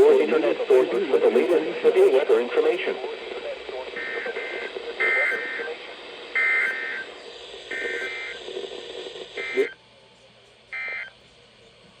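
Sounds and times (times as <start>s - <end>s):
radio hiss: 0.0s - 12.0s
harsh screeching data bursts: 4.0s - 8.5s, 9.2s - 9.8s.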